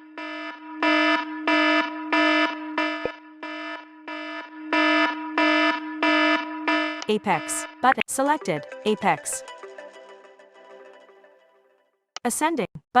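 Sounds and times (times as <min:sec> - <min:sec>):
fast repeating electronic beeps: 0:00.2 - 0:09.5.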